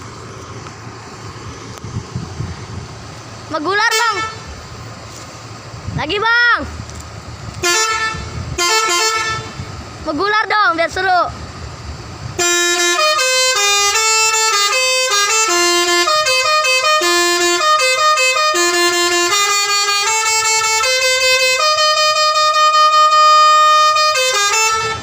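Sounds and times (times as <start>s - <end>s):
bus horn playing a tune: 3.7s - 4.6s, 7.6s - 9.8s, 12.3s - 25.0s.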